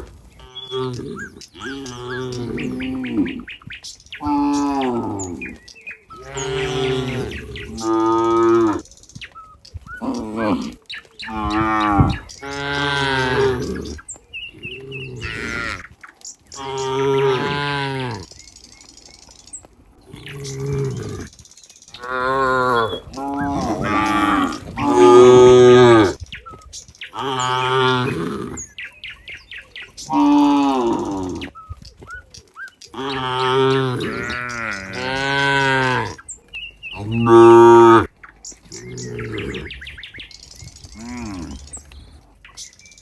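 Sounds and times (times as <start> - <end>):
cows mooing: 0.0 - 3.6, 4.2 - 8.8, 10.0 - 16.0, 16.6 - 18.3, 20.1 - 21.3, 22.0 - 26.2, 27.2 - 28.8, 30.0 - 31.5, 33.0 - 36.3, 36.9 - 38.1, 38.7 - 42.4.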